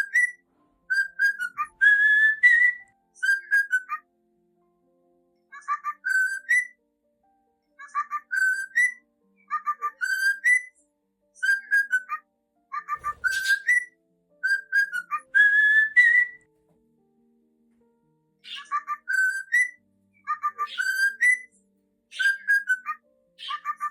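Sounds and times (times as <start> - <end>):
cockatiel whistling a tune: 0.0 - 4.0, 5.6 - 6.8, 7.8 - 10.8, 11.4 - 12.2, 12.8 - 16.5, 18.4 - 21.5, 22.1 - 23.9
harsh scratchy bird note: 13.0 - 13.8.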